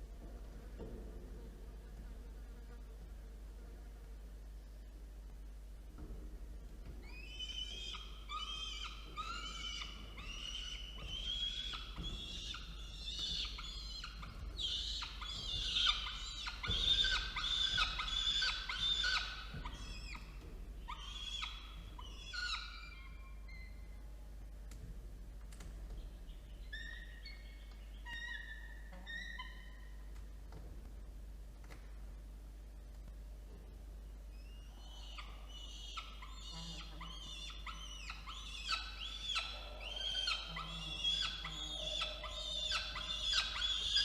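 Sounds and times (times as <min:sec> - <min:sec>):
falcon chicks begging calls: 0:07.3 - 0:20.3, 0:34.7 - 0:44.0.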